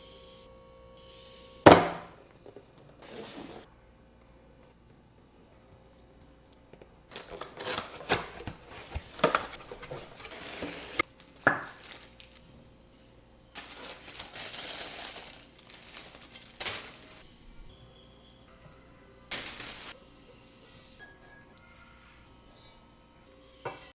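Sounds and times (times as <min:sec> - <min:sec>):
packaging rustling: 0:07.1 - 0:12.4, 0:13.6 - 0:17.2, 0:19.3 - 0:20.0.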